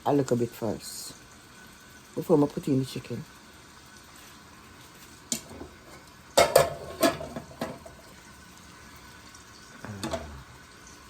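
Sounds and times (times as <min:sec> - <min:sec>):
spoon scraping a cooking pot: 0:05.4 - 0:08.0.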